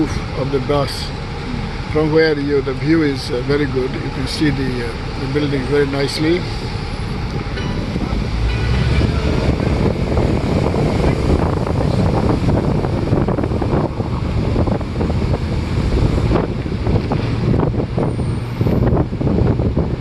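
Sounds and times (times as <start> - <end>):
bus engine running: 0.0 - 20.0
traffic: 0.0 - 20.0
wind buffeting microphone: 6.3 - 20.0.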